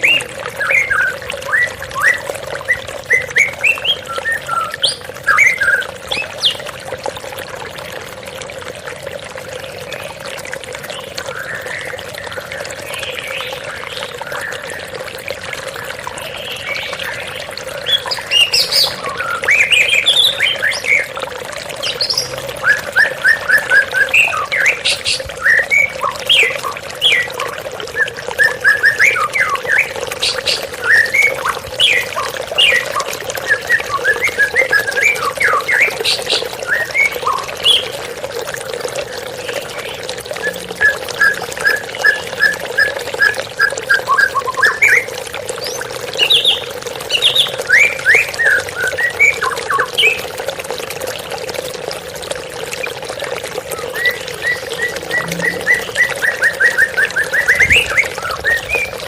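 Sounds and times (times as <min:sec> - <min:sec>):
bird singing whistles and chirps: 0:00.0 - 0:06.6, 0:21.8 - 0:37.9, 0:40.4 - 0:46.6, 0:47.2 - 0:50.2, 0:53.8 - 0:59.0.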